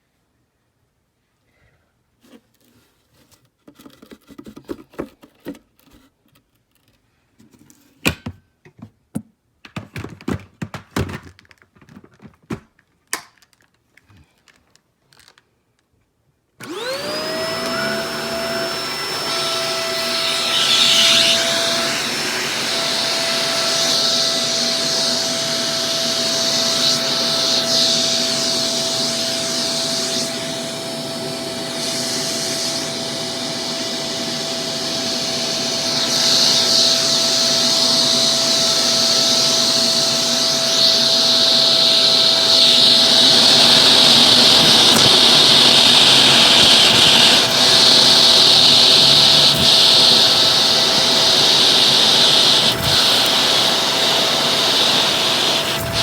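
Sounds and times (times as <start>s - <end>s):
vacuum cleaner motor whining: 16.6s - 56.0s.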